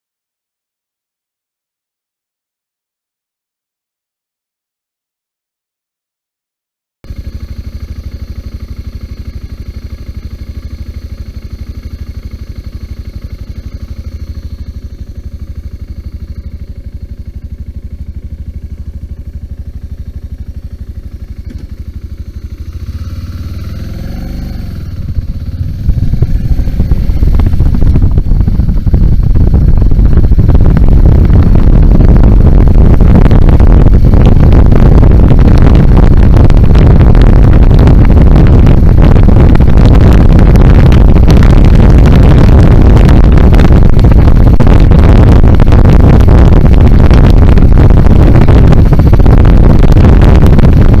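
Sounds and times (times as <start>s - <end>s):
motorcycle engine idling and revving: 7.0s - 51.0s.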